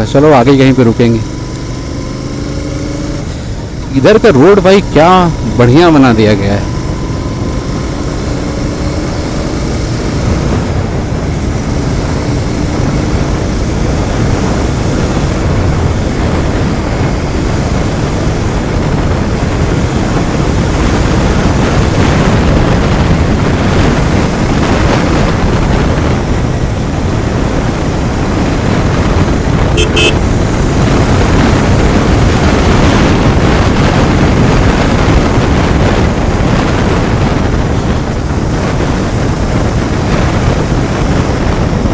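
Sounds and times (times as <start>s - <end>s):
motorcycle engine running: 0.0s - 41.9s
wind rush on microphone: 0.0s - 41.9s
horn beep: 29.7s - 30.3s.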